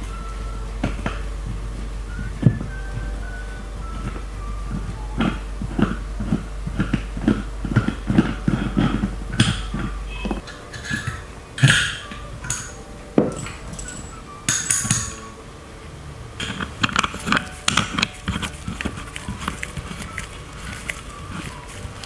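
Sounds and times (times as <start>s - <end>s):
metal scraping: 0.0s - 22.0s
small metal clicks and clinks: 12.5s - 15.3s.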